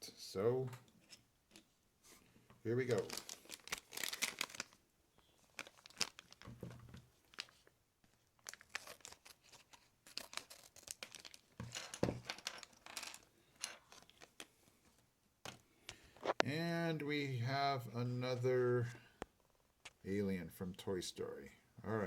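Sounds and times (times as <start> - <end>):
plastic foil bag crinkling: 2.8 - 14.5.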